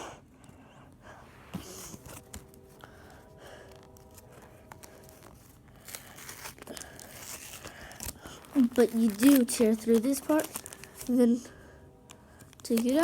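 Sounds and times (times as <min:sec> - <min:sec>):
foil wrapper crinkling and tearing: 0:03.7 - 0:11.4, 0:12.4 - 0:13.0.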